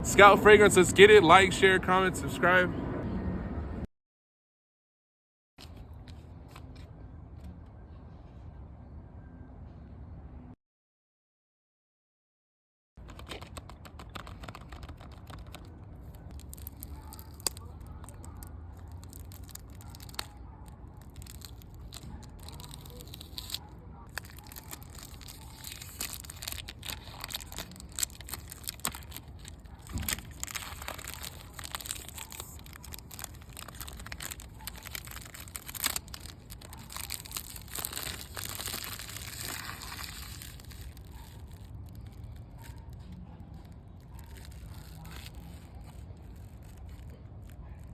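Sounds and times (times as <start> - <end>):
clicks and crackles: 13.0 - 47.9
wrapping crinkling and tearing: 13.1 - 47.9.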